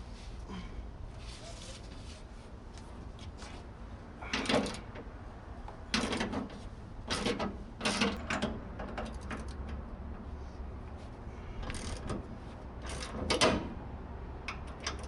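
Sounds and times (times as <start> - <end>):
metal parts clanking and scraping: 4.2 - 4.9, 5.9 - 9.6, 12.8 - 13.7.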